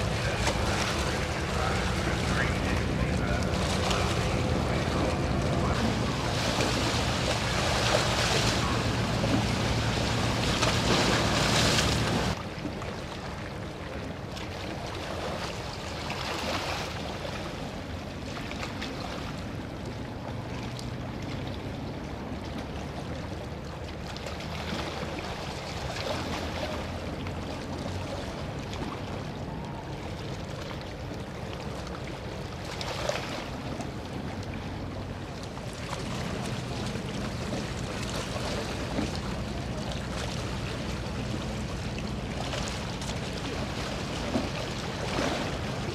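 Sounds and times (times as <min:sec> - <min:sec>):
boat engine running: 0:00.0 - 0:12.5, 0:24.8 - 0:45.9
water rushing: 0:00.0 - 0:45.9.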